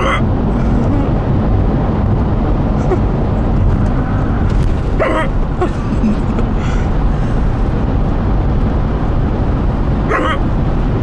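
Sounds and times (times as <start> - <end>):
car road and engine rumble: 0.0 - 11.0
person hiccupping: 10.1 - 10.4.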